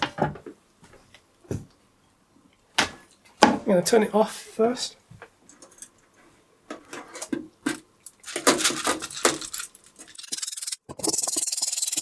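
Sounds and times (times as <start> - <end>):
wet plastic keycaps clattering: 7.0 - 10.5.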